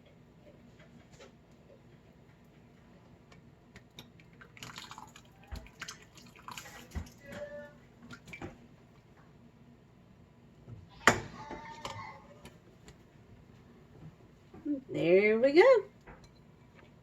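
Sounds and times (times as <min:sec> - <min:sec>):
thick soup pouring and dripping: 0:03.3 - 0:08.6.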